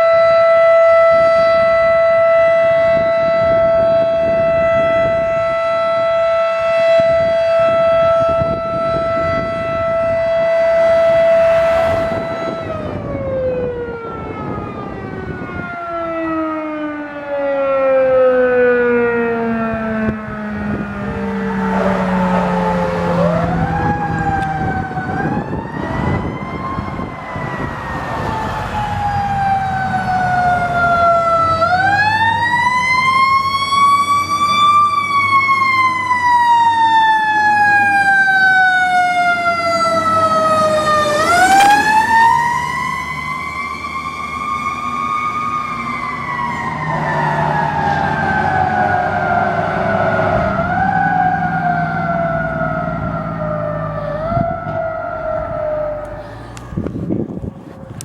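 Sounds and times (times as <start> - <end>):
fire engine siren wailing: 0.0 - 58.0
vehicle rumble: 18.5 - 58.0.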